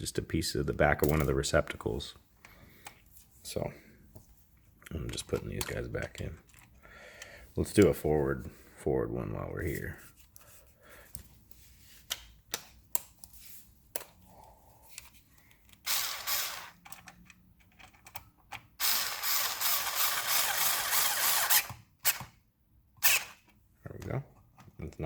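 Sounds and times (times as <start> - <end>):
screws and plastic clicking: 15.0 - 22.4, 23.0 - 23.6
cordless screwdriver running: 15.8 - 16.8, 18.8 - 22.2, 23.0 - 23.4.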